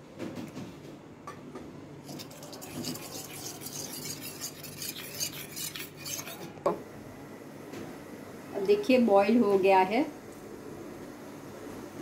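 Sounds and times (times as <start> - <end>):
spoon clinking and scraping container: 2.0 - 6.5.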